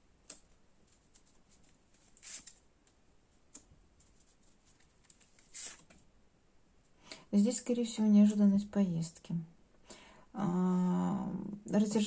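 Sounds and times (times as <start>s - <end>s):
soft rustles: 0.2s - 6.1s.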